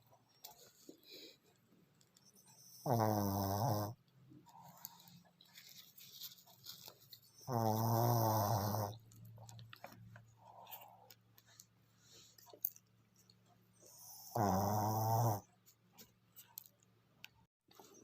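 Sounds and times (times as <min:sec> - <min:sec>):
dog snoring: 0:02.3 - 0:05.2, 0:07.4 - 0:09.0, 0:13.8 - 0:15.5
soft snuffling breaths: 0:10.2 - 0:12.6.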